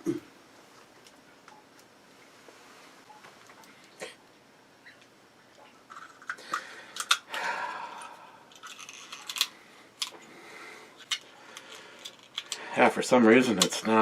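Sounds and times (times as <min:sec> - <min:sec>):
toy cap gun clicking and rattling: 0:08.6 - 0:10.2.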